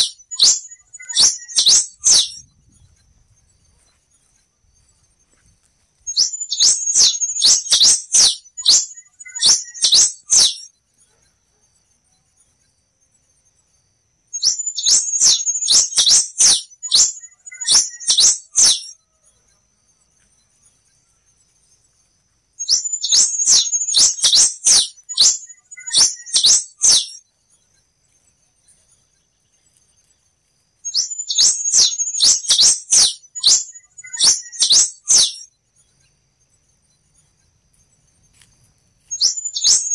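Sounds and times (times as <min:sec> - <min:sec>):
finch singing: 0:00.0 - 0:10.7, 0:14.4 - 0:19.0, 0:22.6 - 0:27.2, 0:30.8 - 0:36.2, 0:39.0 - 0:39.9
faint steady high tone: 0:00.0 - 0:39.9.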